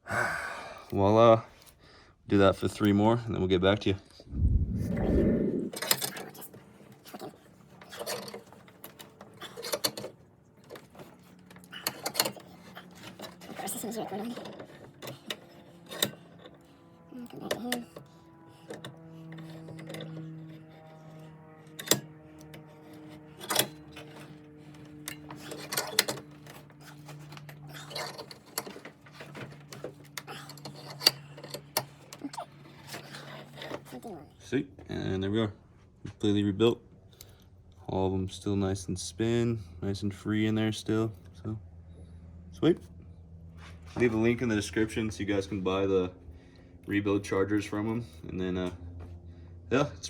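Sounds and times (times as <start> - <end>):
steady low hum: 0.0 - 50.0
faint steady hum: 4.0 - 6.7.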